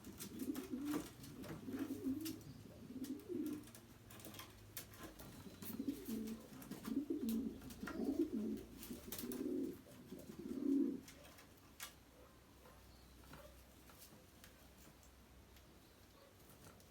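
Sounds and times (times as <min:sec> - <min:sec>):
pigeons cooing: 0:00.0 - 0:11.4.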